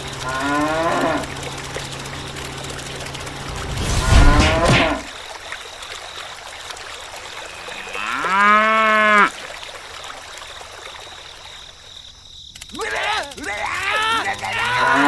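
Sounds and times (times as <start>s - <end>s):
cow mooing: 0.2s - 1.3s.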